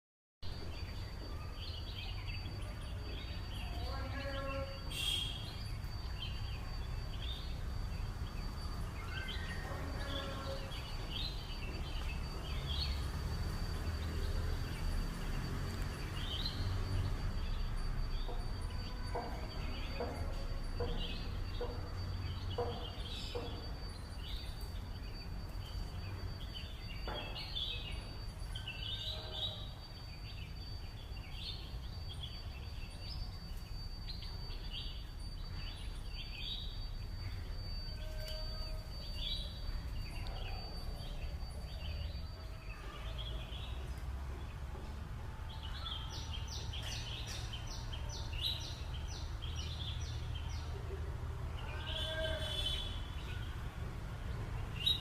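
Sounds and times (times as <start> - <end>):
thin high whine: 2.6 - 44.0.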